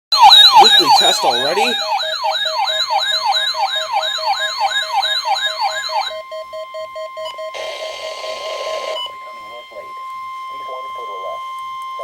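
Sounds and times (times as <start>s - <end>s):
steady warning alarm tone: 0.1s - 12.0s
whooping alert siren: 0.1s - 12.0s
radio hiss: 7.6s - 10.0s.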